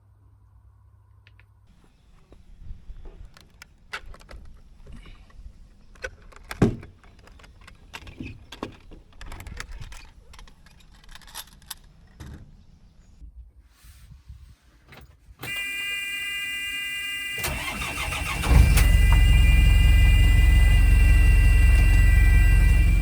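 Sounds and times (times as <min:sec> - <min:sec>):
anemometer clicking and rattling: 0:01.7 - 0:12.2.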